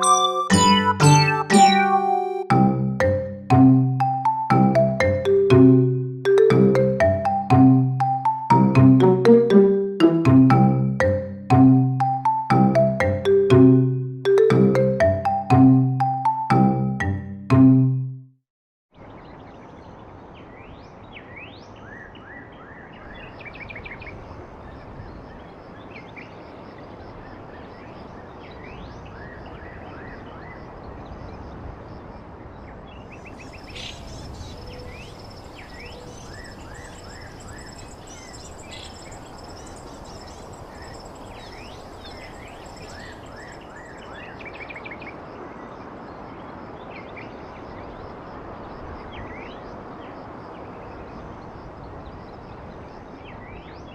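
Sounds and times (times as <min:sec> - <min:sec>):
birds chirping: 0:33.1 - 0:45.0.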